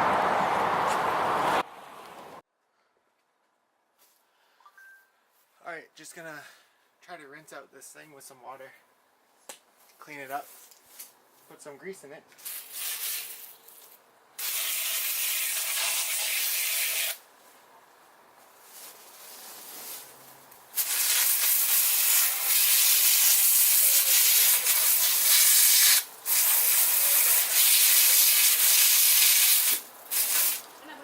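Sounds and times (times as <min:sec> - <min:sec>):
spray can hissing: 0:12.4 - 0:13.6, 0:14.4 - 0:17.2, 0:20.8 - 0:30.7.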